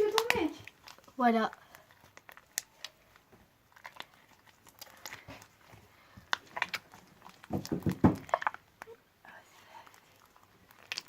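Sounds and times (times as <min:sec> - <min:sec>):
person speaking: 0:00.0 - 0:01.6
sticky slime squeezed by hand: 0:10.1 - 0:11.0.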